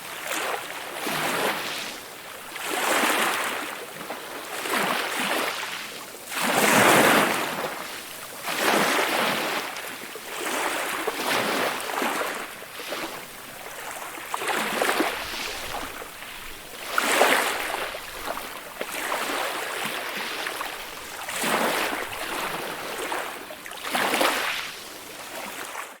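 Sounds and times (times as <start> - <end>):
ocean waves breaking: 0.0 - 26.0.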